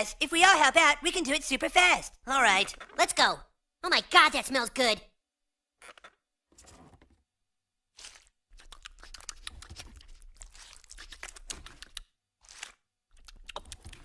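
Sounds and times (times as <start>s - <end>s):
crispy chicken skin tearing: 8.0s - 13.8s
crunchy chewing: 8.0s - 14.0s.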